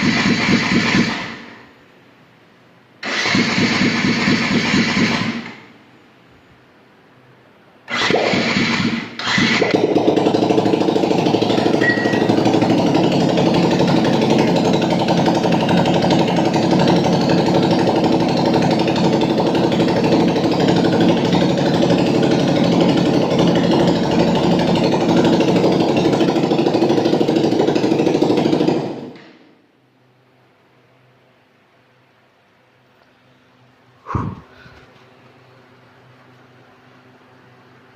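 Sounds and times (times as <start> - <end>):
engine running: 0.0 - 1.7, 3.0 - 5.7, 7.9 - 29.6.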